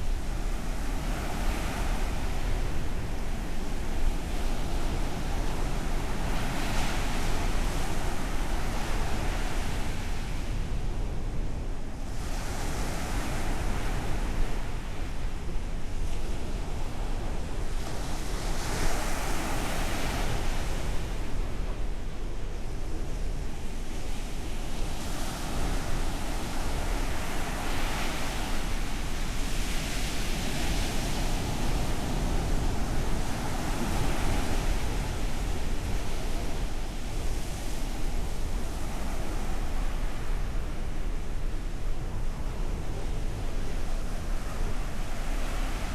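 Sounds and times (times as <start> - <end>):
waves breaking on a beach: 0.0 - 45.9
ocean surf breaking on shore: 24.9 - 41.0.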